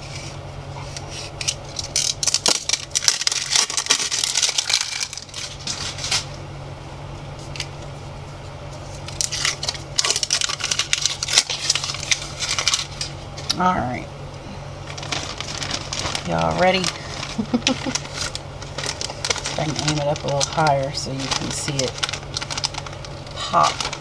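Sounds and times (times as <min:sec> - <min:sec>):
steady low hum: 0:00.0 - 0:24.0
plastic packaging crackling: 0:01.2 - 0:06.4, 0:08.9 - 0:13.7, 0:14.8 - 0:24.0.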